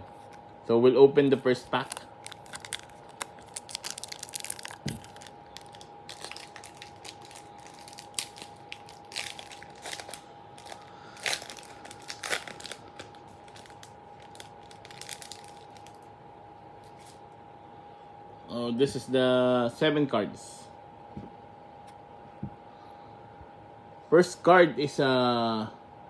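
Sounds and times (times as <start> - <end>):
faint steady hum: 0.0 - 26.0
wrapper tearing and crinkling: 1.4 - 16.1.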